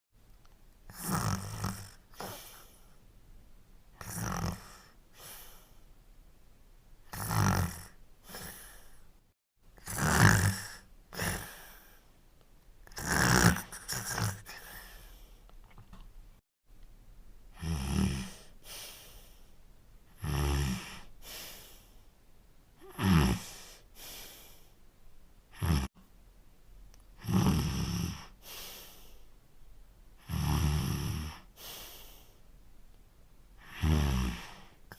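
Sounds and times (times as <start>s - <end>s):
cartoon dog snoring: 0.9s - 2.8s, 4.0s - 5.5s, 7.1s - 8.9s, 9.8s - 12.0s, 12.8s - 15.0s, 17.5s - 18.5s, 20.1s - 21.1s, 22.8s - 23.7s, 25.5s - 25.9s, 27.2s - 28.7s, 30.2s - 32.0s, 33.6s - 34.9s.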